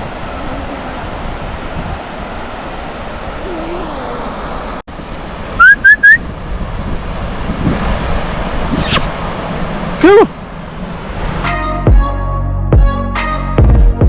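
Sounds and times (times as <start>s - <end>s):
surf on a beach: 0.0s - 11.5s
wind: 0.0s - 13.6s
loud rising whistles: 5.6s - 6.2s, 8.8s - 9.1s.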